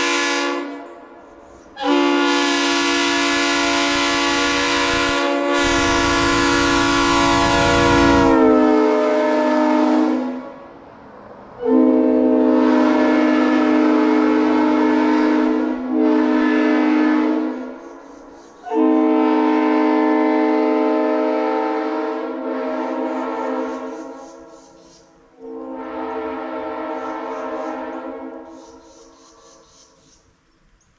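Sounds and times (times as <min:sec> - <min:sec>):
locomotive air horn chord: 0:00.0 - 0:01.2, 0:01.8 - 0:10.9, 0:11.6 - 0:18.0, 0:18.7 - 0:24.5, 0:25.4 - 0:28.6.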